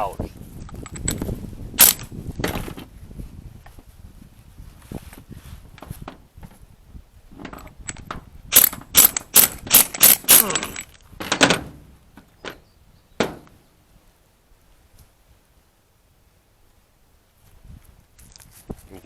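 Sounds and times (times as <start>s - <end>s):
light ratchet clicks: 7.9s - 11.0s
ratchet strokes: 8.6s - 10.8s.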